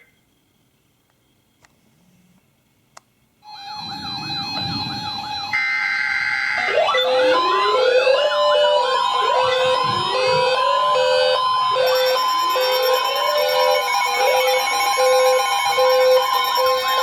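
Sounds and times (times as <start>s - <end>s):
electronic siren yelp: 3.4s - 17.0s
overlapping siren wails: 3.4s - 17.0s
steady high tone: 3.4s - 17.0s.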